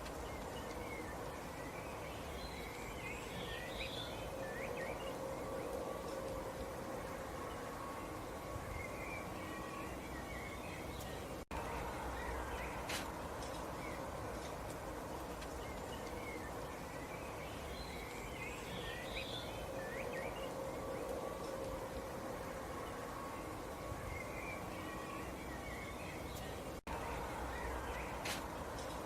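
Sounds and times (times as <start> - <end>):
outdoor background hiss: 0.0 - 29.0
small birds chirping: 0.0 - 29.0.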